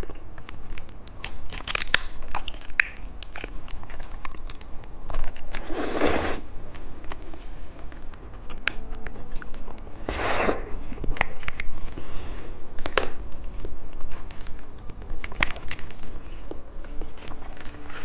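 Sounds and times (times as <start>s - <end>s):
plastic packaging crinkling: 0.5s - 5.6s, 12.8s - 18.0s.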